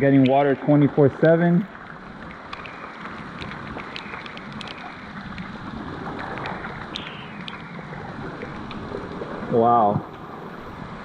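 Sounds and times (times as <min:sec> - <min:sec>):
water rushing: 0:00.0 - 0:11.0
water dripping on rock: 0:02.2 - 0:05.5, 0:06.2 - 0:07.7.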